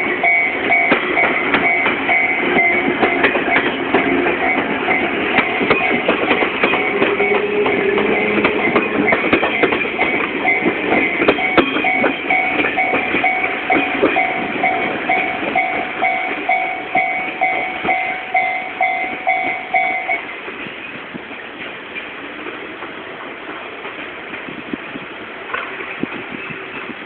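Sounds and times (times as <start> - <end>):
train wheels clicking over rail joints: 0.0 - 27.0
level crossing bell ringing: 6.8 - 20.2.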